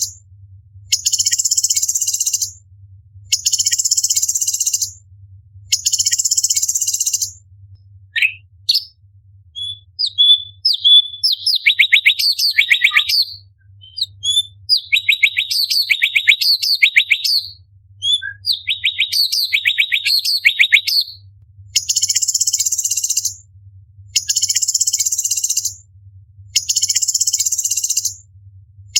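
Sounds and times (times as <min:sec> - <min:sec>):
faint low hum: 0:00.0 - 0:15.9
bird singing whistles: 0:00.9 - 0:02.6, 0:03.3 - 0:05.0, 0:05.7 - 0:07.4, 0:08.2 - 0:08.9, 0:09.6 - 0:21.2, 0:21.8 - 0:23.4, 0:24.2 - 0:25.8, 0:26.6 - 0:28.2.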